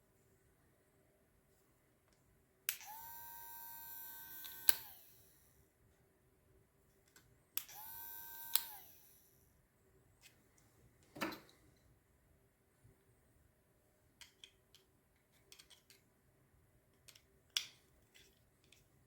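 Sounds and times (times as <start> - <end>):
hair trimmer parts clicking: 2.7 - 5.1, 7.6 - 9.0.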